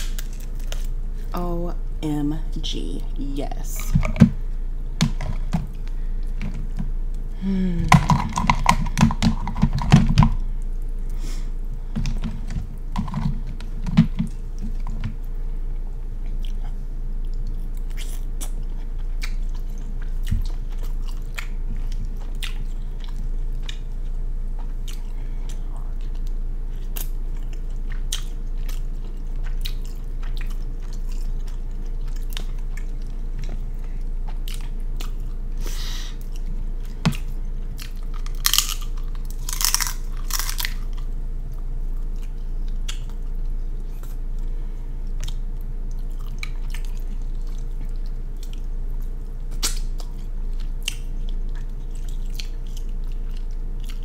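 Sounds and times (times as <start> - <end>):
small crunches: 0.0 - 1.0, 37.1 - 41.0
person chewing: 0.0 - 1.4, 5.0 - 54.0.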